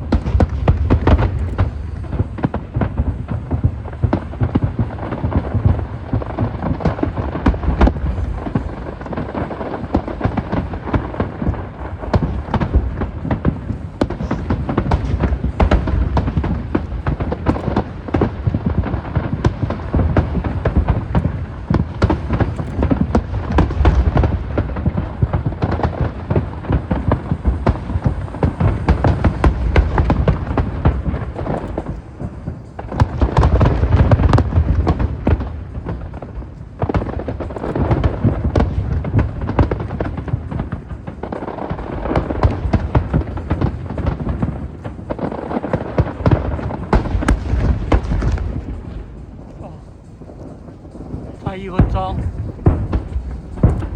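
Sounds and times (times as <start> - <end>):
deep rumbling boom: 0.0 - 8.9, 46.3 - 53.9
fireworks bursts and crackling: 0.0 - 53.9.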